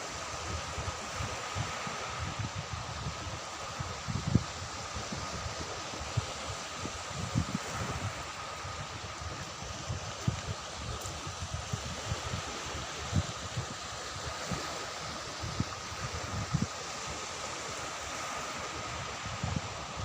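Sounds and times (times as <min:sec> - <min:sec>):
surf washing on a beach: 0:00.0 - 0:20.0
wind buffeting microphone: 0:00.4 - 0:17.4, 0:18.6 - 0:20.0.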